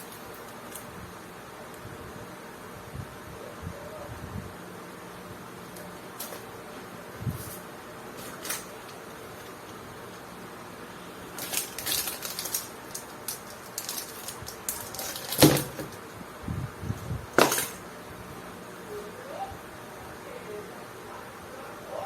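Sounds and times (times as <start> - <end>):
packaging rustling: 8.2 - 9.8, 11.3 - 16.0.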